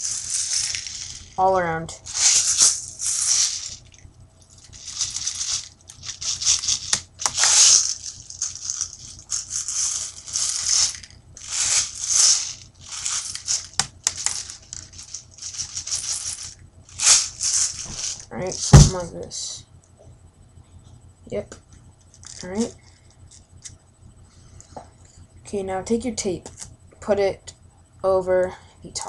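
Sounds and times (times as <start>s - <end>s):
plastic pellets rattling: 0.0s - 19.0s.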